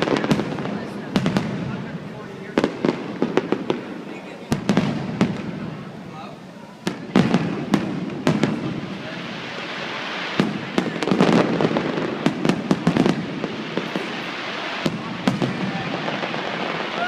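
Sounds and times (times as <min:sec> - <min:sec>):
fireworks bangs and crackles: 0:00.0 - 0:17.0.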